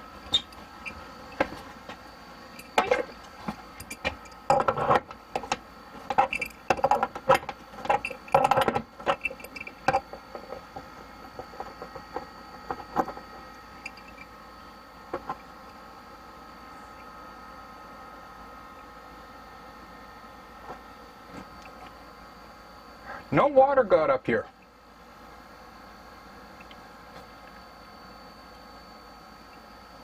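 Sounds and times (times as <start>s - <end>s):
faint steady hum: 0.0s - 30.0s
clicks and rattles of plumbing fittings: 2.6s - 13.2s.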